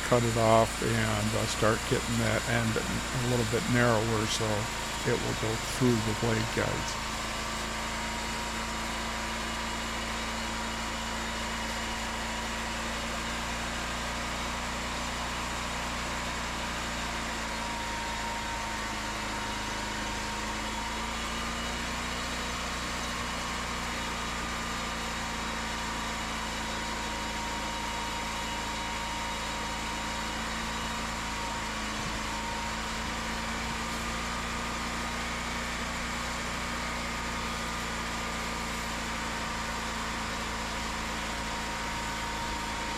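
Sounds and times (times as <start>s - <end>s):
sawmill machine hum: 0.0s - 7.8s, 26.8s - 42.9s.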